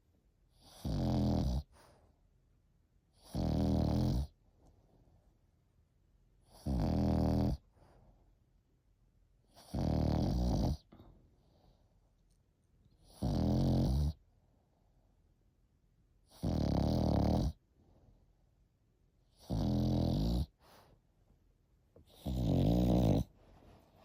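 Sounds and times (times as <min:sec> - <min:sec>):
puppy snoring: 0:00.5 - 0:02.0, 0:03.1 - 0:04.4, 0:06.4 - 0:08.0, 0:09.4 - 0:11.0, 0:13.0 - 0:14.2, 0:16.2 - 0:17.7, 0:19.2 - 0:20.9, 0:22.0 - 0:23.4
quiet breaths: 0:07.6 - 0:08.6, 0:10.8 - 0:13.1, 0:20.4 - 0:24.0.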